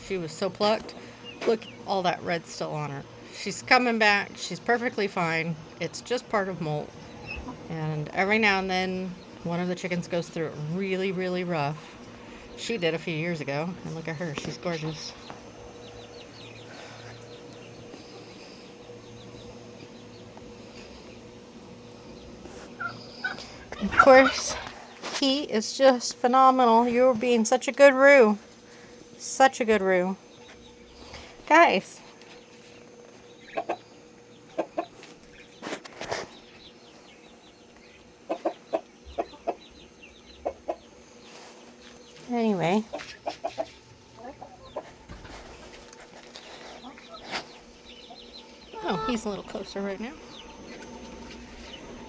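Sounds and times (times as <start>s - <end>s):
bird chirping: 0.0s - 20.4s, 36.2s - 45.7s, 46.4s - 52.0s
chickens clucking: 0.0s - 25.2s, 32.2s - 52.0s
faint steady hum: 0.0s - 52.0s.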